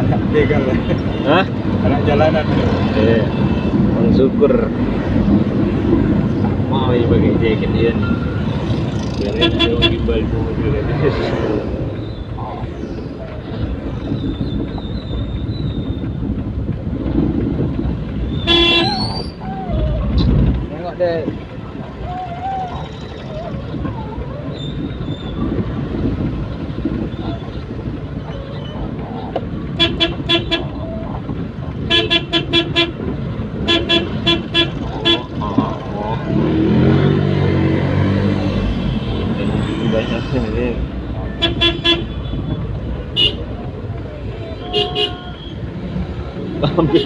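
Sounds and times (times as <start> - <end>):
road and engine noise: 0.0 - 47.0
car horn blast: 18.4 - 19.0, 29.8 - 30.7, 31.9 - 33.0, 33.6 - 35.3, 41.4 - 42.5.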